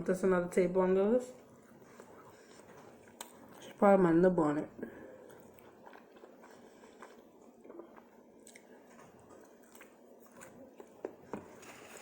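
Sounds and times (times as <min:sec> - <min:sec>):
person chewing: 0:01.6 - 0:03.8, 0:05.2 - 0:12.0.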